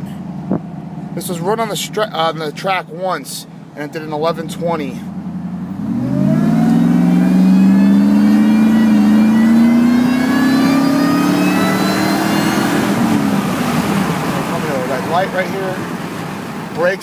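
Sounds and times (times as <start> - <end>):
supercharger whine: 3.6 - 17.0
engine accelerating hard: 4.2 - 17.0.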